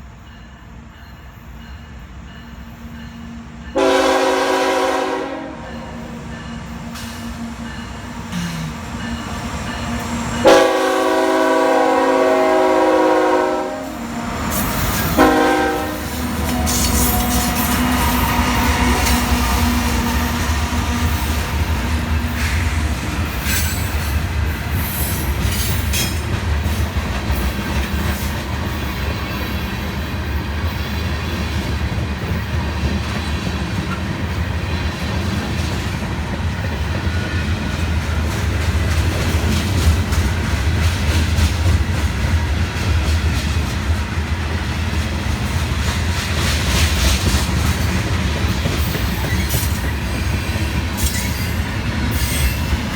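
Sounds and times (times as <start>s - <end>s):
freight train cars rumbling past: 0.0s - 52.9s
train wheels squealing: 16.0s - 31.4s, 48.6s - 52.9s.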